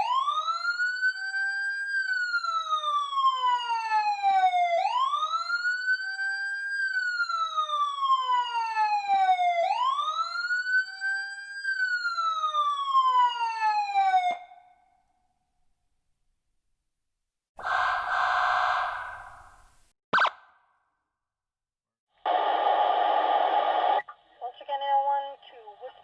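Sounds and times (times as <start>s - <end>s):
emergency vehicle siren wailing: 0.0s - 14.8s, 17.6s - 20.3s.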